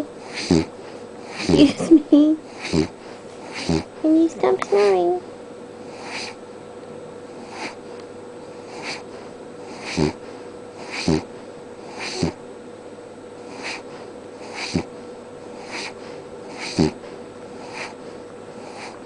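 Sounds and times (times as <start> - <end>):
dog snoring: 0.0 - 1.8, 2.5 - 4.0, 5.8 - 6.4, 7.3 - 7.8, 8.5 - 12.4, 13.4 - 19.0.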